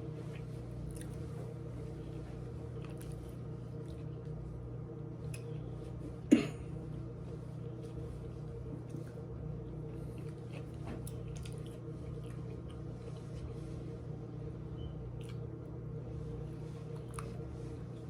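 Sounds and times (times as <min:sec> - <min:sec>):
steady low hum: 0:00.0 - 0:18.0
person chewing a sandwich: 0:00.1 - 0:04.6, 0:07.4 - 0:13.9, 0:15.0 - 0:18.0.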